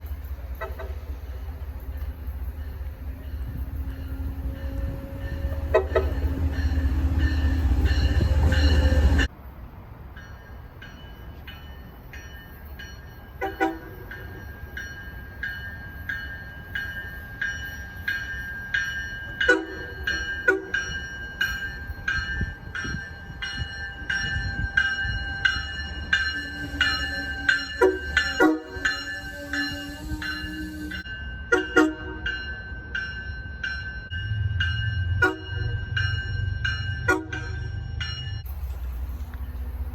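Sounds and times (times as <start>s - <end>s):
train rumbling past: 0.0s - 39.9s
low train horn note: 0.5s - 9.3s, 25.0s - 32.3s
train horn blasts: 0.5s - 9.3s, 13.4s - 14.0s, 19.4s - 20.8s, 24.4s - 32.4s, 35.2s - 35.7s, 37.1s - 37.6s.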